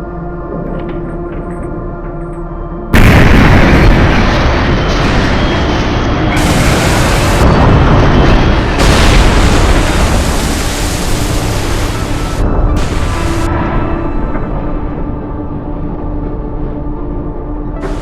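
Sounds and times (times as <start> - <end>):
explosion-like booming rumble: 2.9 - 17.2, 17.8 - 18.0.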